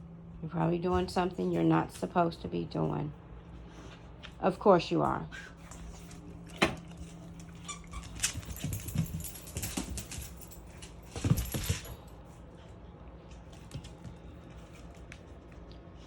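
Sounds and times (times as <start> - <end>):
dog rummaging: 8.0 - 12.0.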